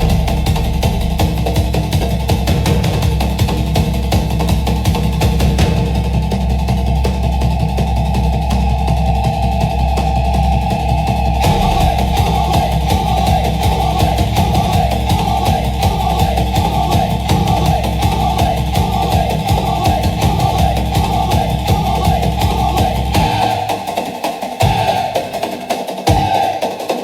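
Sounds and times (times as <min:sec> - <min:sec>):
low drone: 0:00.0 - 0:02.3, 0:05.8 - 0:23.9
fast tribal drumming: 0:00.0 - 0:27.0.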